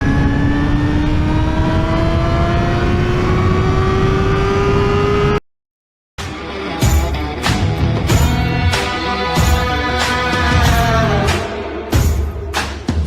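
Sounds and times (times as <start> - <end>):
motorcycle engine revving high: 0.0 - 5.4
music: 6.2 - 13.0.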